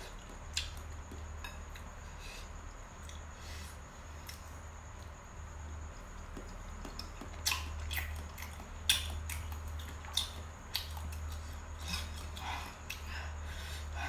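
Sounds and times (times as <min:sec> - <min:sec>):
low steady hum: 0:00.0 - 0:14.0
wet chewing: 0:06.4 - 0:13.1.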